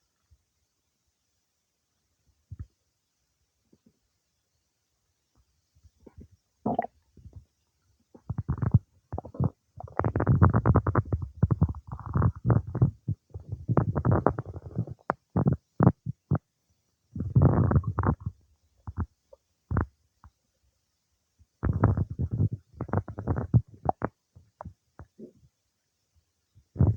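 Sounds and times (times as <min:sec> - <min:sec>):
stomach gurgling and rumbling: 0:06.0 - 0:16.5, 0:17.1 - 0:20.4, 0:21.6 - 0:25.6, 0:26.6 - 0:26.9.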